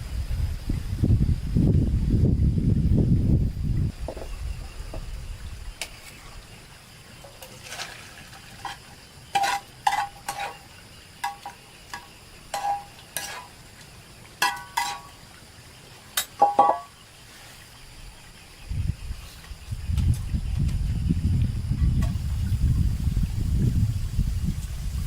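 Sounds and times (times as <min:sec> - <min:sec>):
metal utensil clinking in pot: 0:08.6 - 0:13.5, 0:14.4 - 0:15.2, 0:16.2 - 0:16.9.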